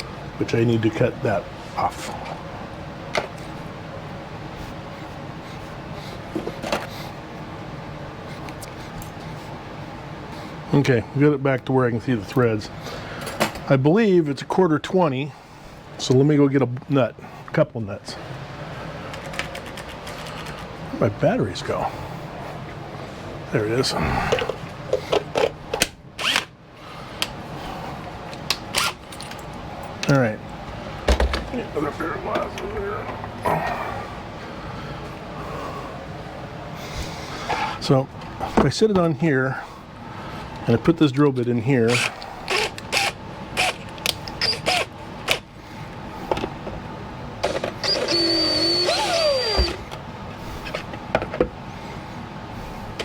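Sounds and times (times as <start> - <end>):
drill motor whine: 26.2 - 26.5, 41.9 - 43.8, 44.4 - 44.9, 47.4 - 49.9.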